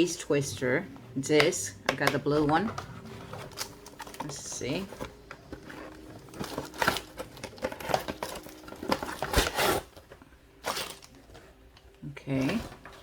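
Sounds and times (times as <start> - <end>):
plastic packaging crinkling: 2.7 - 13.0.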